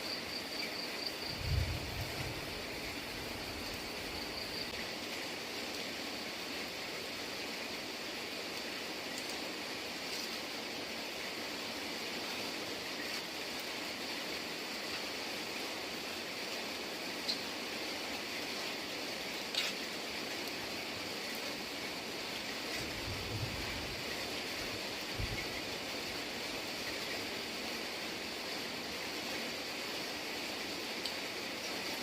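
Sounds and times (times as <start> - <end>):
steady rain falling: 0.0 - 32.0.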